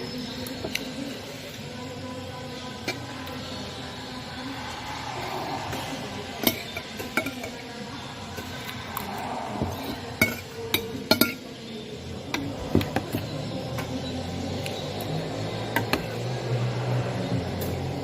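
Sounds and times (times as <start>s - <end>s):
utensils clinking on dishes: 6.3s - 8.8s, 9.6s - 11.6s.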